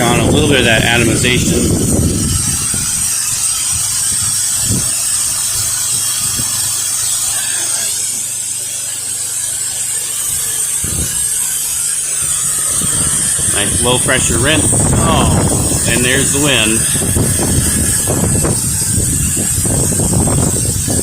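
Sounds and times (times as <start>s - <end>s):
low machine hum: 0.0s - 21.0s
pressure washer spray hissing: 0.0s - 21.0s
low thumps: 12.8s - 21.0s.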